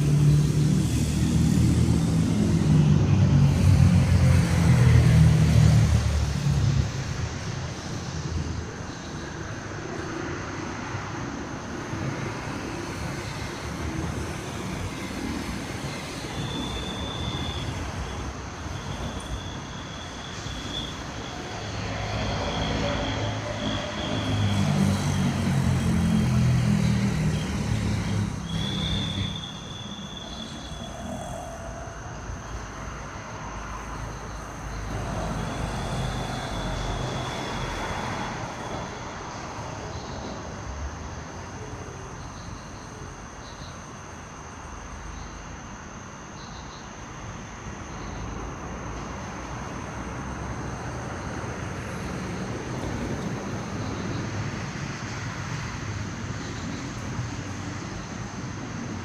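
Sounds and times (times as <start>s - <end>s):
distant road traffic rumble: 0.0s - 59.0s.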